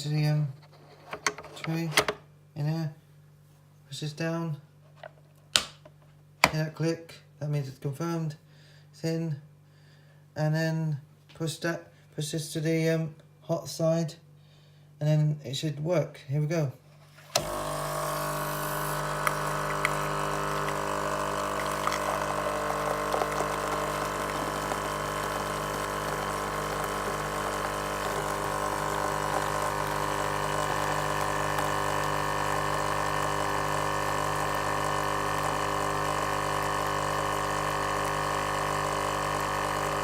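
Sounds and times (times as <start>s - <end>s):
coffee machine pump humming: 17.3s - 40.0s.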